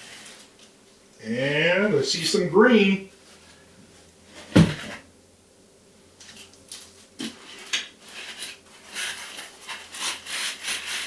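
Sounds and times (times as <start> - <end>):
packaging rustling and scraping: 0.0 - 0.7, 6.2 - 11.0
knock: 4.5 - 4.9.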